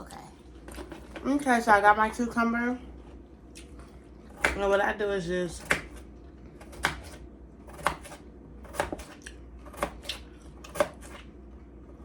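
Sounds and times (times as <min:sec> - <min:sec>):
knife slicing cucumber: 0:05.5 - 0:11.3.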